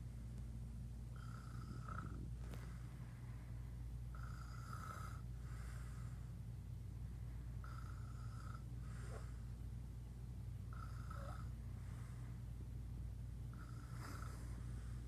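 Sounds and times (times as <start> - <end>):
breath: 2.4 - 3.8, 5.4 - 6.3, 8.8 - 9.5, 11.8 - 12.5
whistling snores: 10.8 - 11.5, 13.6 - 14.4.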